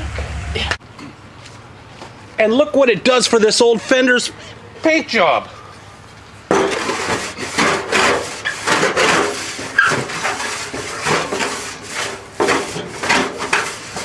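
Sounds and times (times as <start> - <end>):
wood scrubbing against metal: 6.5 - 14.0.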